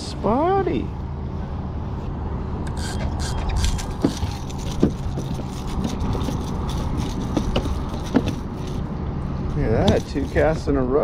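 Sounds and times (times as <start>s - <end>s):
short squeaks: 2.6s - 8.9s
fish splashing and flapping: 2.7s - 8.9s
lure and hooks rattling: 2.7s - 8.9s, 9.8s - 10.6s.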